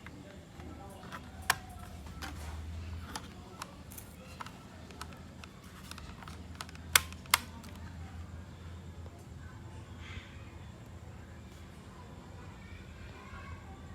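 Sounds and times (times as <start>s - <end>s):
laptop parts clicking and tapping: 0.0s - 7.8s
sharp clicks: 1.0s - 7.8s.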